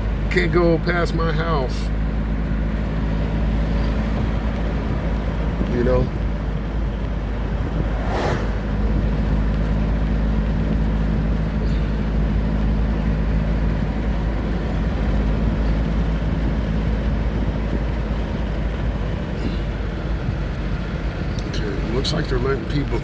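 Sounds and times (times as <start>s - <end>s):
car engine hum: 0.0s - 23.0s
road rumble: 0.0s - 23.0s.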